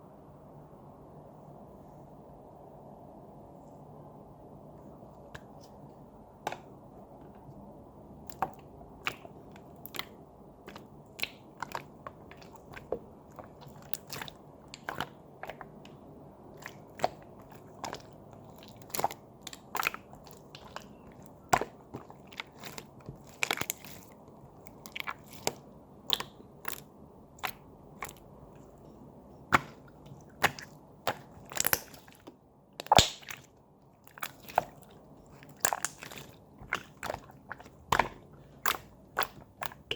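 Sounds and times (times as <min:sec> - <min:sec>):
low steady hiss: 0:00.0 - 0:39.9
slime clicking and popping: 0:24.7 - 0:28.2, 0:29.5 - 0:33.5, 0:35.4 - 0:39.9.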